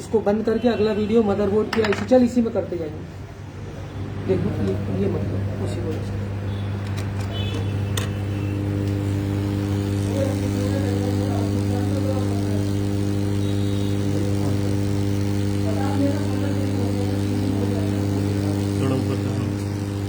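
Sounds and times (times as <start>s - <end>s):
electrical hum: 3.8s - 20.0s.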